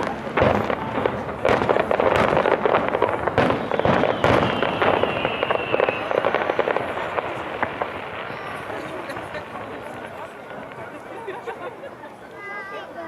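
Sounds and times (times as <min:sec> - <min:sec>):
fireworks crackling and banging: 0:00.0 - 0:13.0
faint high whistle: 0:03.6 - 0:06.4, 0:08.3 - 0:08.7.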